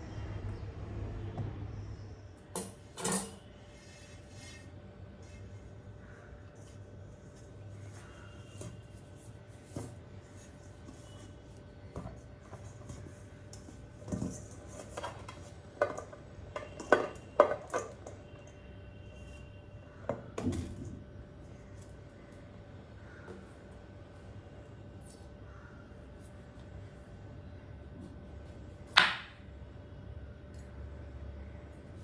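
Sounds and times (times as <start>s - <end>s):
faint steady hum: 0.0s - 32.0s
dishes and utensils clinking: 2.6s - 3.5s.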